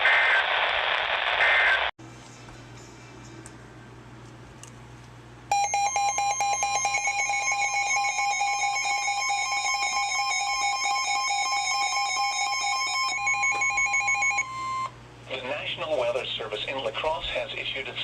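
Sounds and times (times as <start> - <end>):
radio static hiss: 0.0 - 1.9
steady two-tone emergency alert: 5.5 - 15.0.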